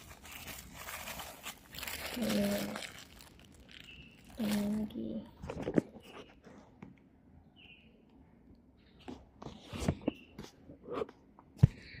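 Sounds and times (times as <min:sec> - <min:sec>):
soft crinkling rustles: 0:00.0 - 0:06.8.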